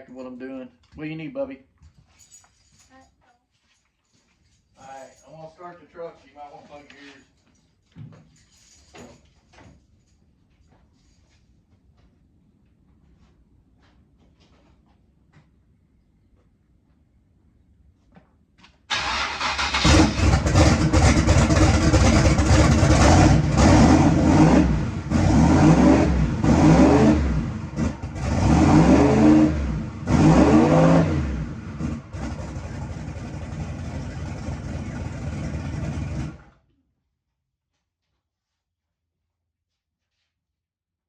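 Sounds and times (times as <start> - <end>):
pickup engine starting and revving: 18.9 - 36.6.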